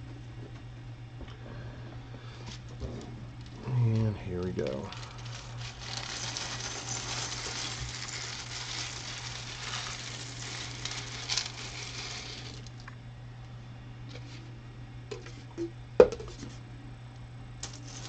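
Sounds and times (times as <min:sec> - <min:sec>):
plastic bricks clattering: 0:04.8 - 0:12.9.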